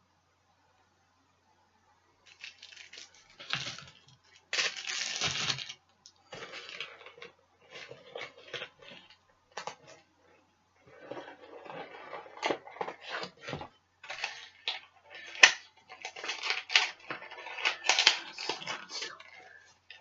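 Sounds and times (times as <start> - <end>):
packaging crinkling and tearing: 2.3 - 5.8, 14.0 - 20.0.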